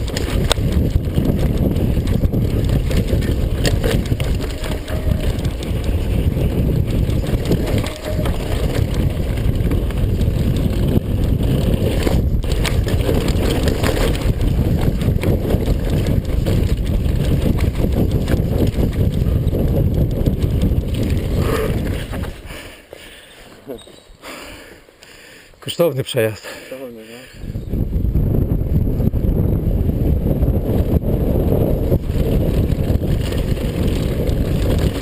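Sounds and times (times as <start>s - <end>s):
tyres rumbling over dirt and rocks: 0.0s - 22.5s, 30.8s - 35.0s
wind buffeting microphone: 0.0s - 22.9s, 27.3s - 35.0s
bike rattling and clicking: 0.0s - 24.2s, 27.6s - 35.0s.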